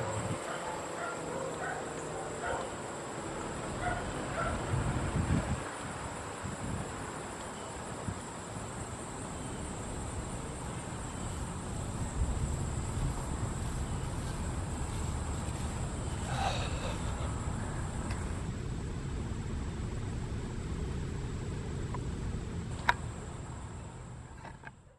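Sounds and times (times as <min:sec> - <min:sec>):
high-pitched insect drone: 0:08.7 - 0:18.4.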